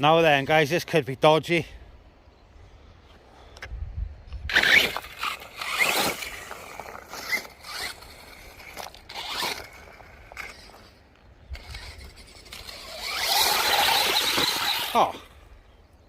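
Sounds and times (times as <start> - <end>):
tyres scraping over rough ground: 4.4 - 15.6
electric motor whining: 4.5 - 15.5.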